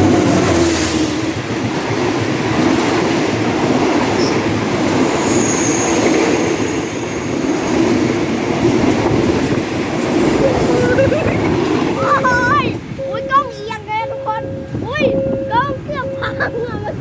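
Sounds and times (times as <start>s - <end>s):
train wheels rumbling and rattling: 0.0s - 17.0s
faint high squeal: 5.2s - 6.5s.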